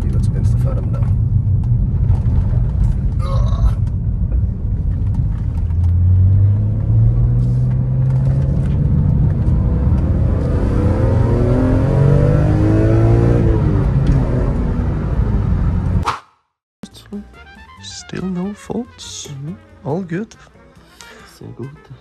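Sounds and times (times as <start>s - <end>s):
car engine accelerating: 0.0s - 16.0s.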